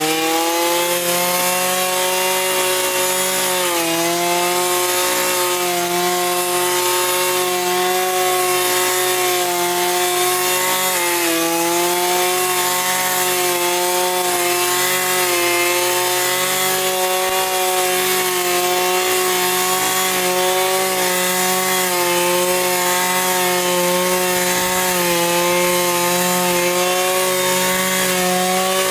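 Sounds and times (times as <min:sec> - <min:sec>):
lawn mower running: 0:11.6 - 0:28.9.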